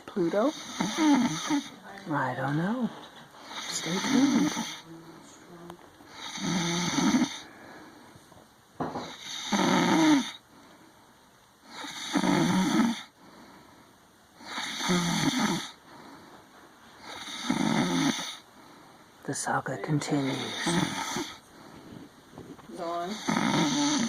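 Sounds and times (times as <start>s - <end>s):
quiet breathing: 0.1s - 8.4s, 10.2s - 12.2s, 12.8s - 24.0s
woman snoring: 0.3s - 1.7s, 3.5s - 4.9s, 6.1s - 7.5s, 9.0s - 10.4s, 11.7s - 13.2s, 14.4s - 15.8s, 17.0s - 18.4s, 20.1s - 21.4s, 22.9s - 24.0s.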